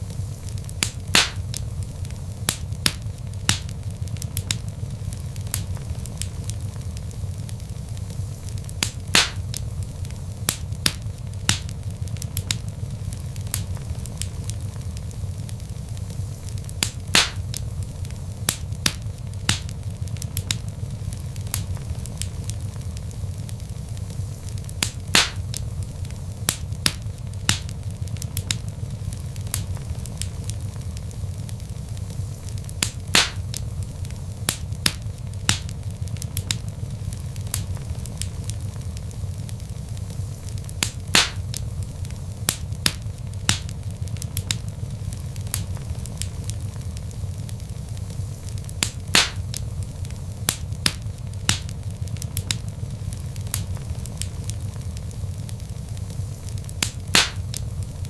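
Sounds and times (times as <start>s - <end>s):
fire popping sharply: 0.0s - 58.0s
log fire crackling: 0.0s - 58.0s.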